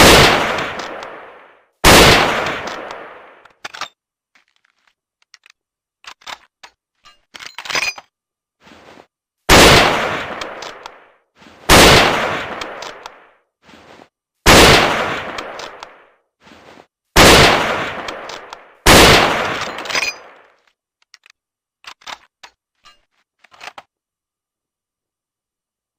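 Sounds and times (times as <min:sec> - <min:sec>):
rifle shots with ringing tail: 0:00.0 - 0:03.4, 0:09.5 - 0:11.1, 0:11.7 - 0:13.3, 0:14.5 - 0:16.0, 0:17.2 - 0:20.4
small mechanical clicks: 0:19.9 - 0:23.9.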